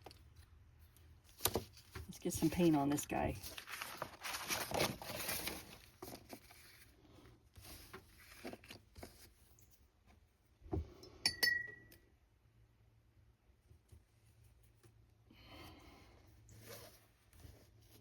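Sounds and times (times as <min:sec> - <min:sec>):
sharp glass clinks: 0:11.2 - 0:12.0.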